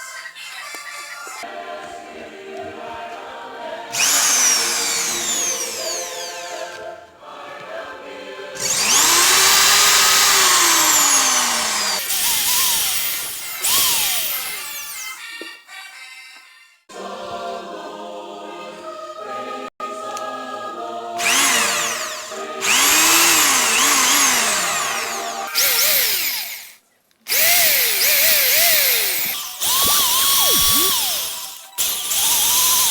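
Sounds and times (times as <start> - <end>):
electric drill running: 4.0 - 6.6, 8.6 - 15.0, 21.2 - 32.9.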